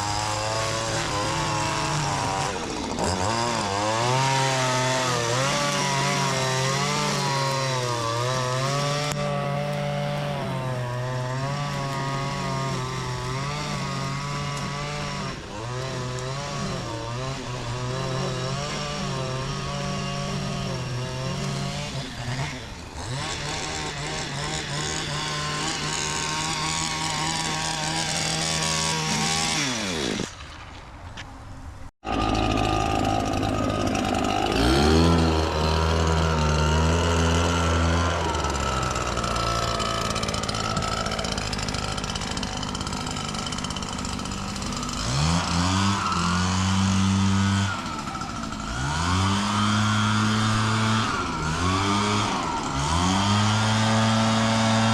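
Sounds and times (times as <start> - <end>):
engine revving: 0.0 - 30.4, 32.0 - 54.9
lawn mower engine running: 0.0 - 30.6, 32.0 - 54.9.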